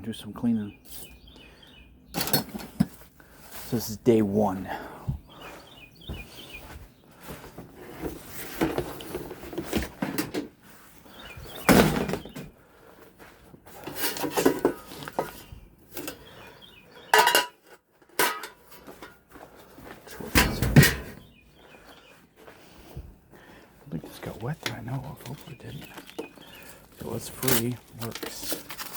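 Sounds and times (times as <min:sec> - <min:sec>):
stored items clattering: 0:02.1 - 0:03.9, 0:04.7 - 0:28.9.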